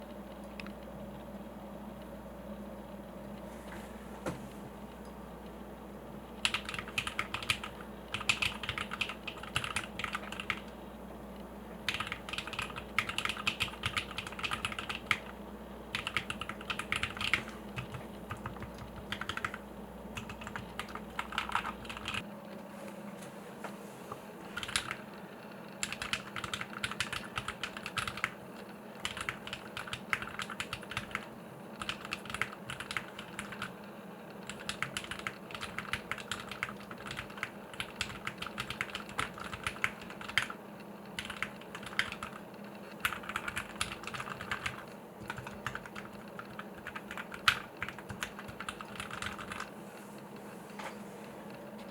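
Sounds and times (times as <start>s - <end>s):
mechanical keyboard typing: 6.4s - 10.7s, 11.9s - 15.3s, 15.9s - 19.6s, 20.2s - 22.2s, 24.6s - 25.0s, 25.8s - 28.4s, 29.0s - 33.7s, 34.4s - 42.4s, 43.0s - 49.7s.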